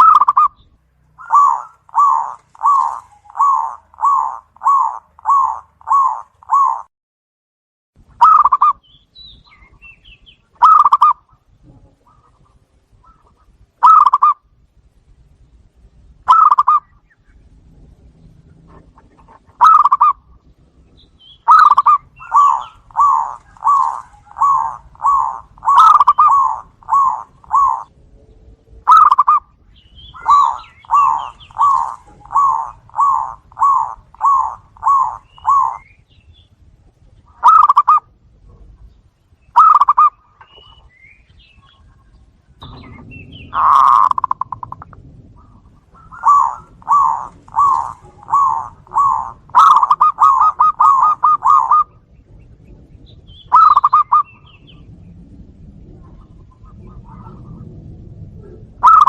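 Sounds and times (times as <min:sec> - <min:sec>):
dove cooing: 0:00.0 - 0:00.6, 0:01.2 - 0:06.9, 0:08.2 - 0:08.8, 0:10.6 - 0:14.5, 0:16.3 - 0:16.9, 0:18.5 - 0:20.4, 0:21.3 - 0:28.0, 0:28.7 - 0:36.0, 0:37.2 - 0:38.9, 0:39.6 - 0:40.8, 0:41.6 - 0:52.1, 0:53.4 - 0:59.0.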